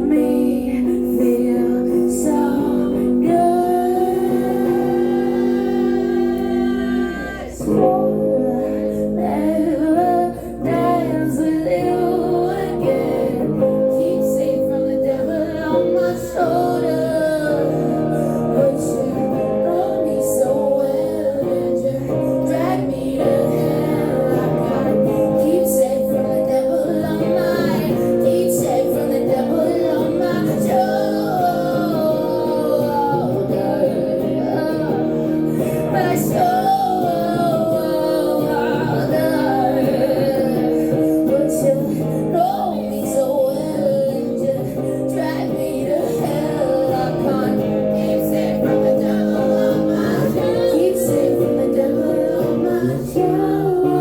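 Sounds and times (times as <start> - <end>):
woman singing: 0.0 - 54.0.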